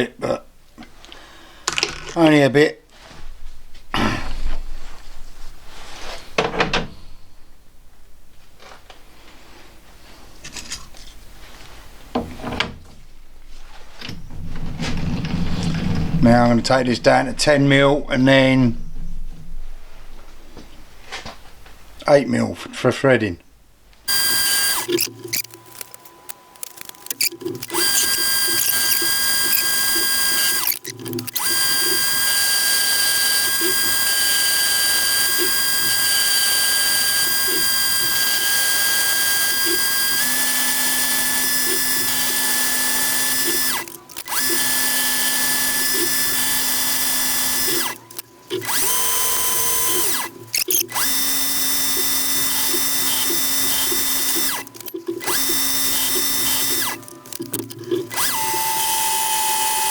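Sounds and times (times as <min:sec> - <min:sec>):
metal lathe motor whine: 0:24.1 - 0:48.0, 0:48.6 - 0:57.4, 0:58.1 - 0:59.9.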